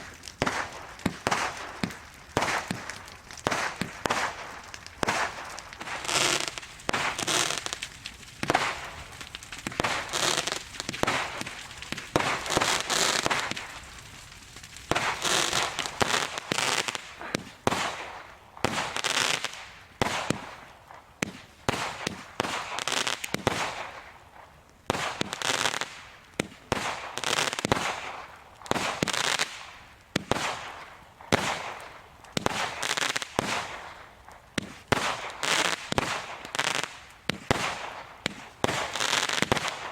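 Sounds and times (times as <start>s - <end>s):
fireworks bangs: 0.0s - 14.2s, 14.8s - 39.9s
fireworks hissing: 3.5s - 7.8s, 12.2s - 13.5s, 14.9s - 17.8s.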